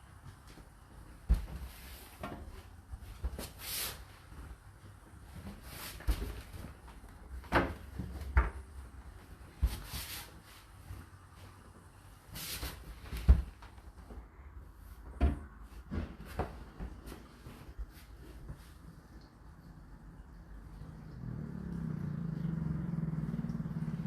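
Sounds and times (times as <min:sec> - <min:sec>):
handling knocks and clunks: 0:15.1 - 0:17.5.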